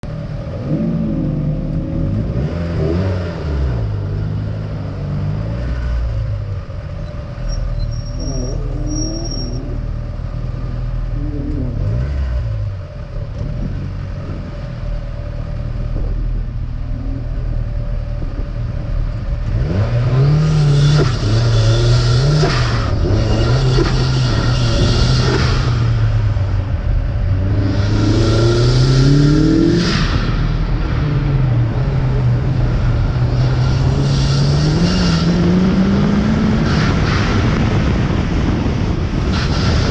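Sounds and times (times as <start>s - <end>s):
car engine revving: 0.0s - 39.9s
high-pitched squeal: 6.8s - 12.5s, 16.8s - 38.2s.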